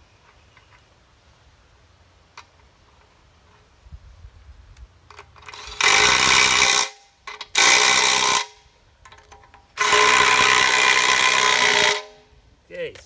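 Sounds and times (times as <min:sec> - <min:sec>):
power tool running: 0:05.5 - 0:08.5, 0:09.8 - 0:12.1.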